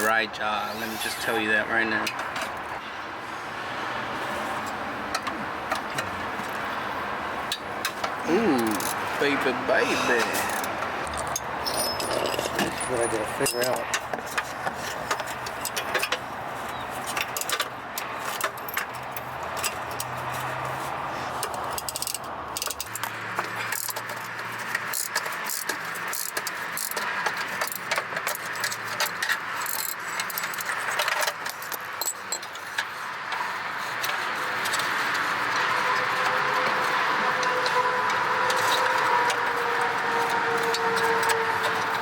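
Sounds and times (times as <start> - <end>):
metal tools clinking: 10.0 - 16.2.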